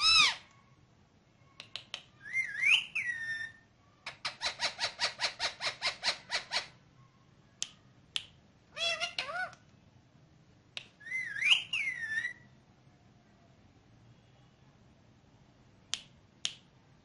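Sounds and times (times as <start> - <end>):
parakeet squawks: 0.0 - 0.4, 2.3 - 6.8, 8.7 - 9.6
parakeet clicks: 1.6 - 2.1.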